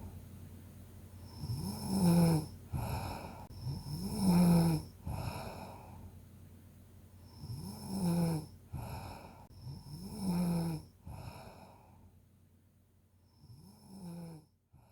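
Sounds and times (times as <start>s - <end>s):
person snoring: 1.2s - 6.0s, 7.2s - 11.9s, 13.4s - 14.9s.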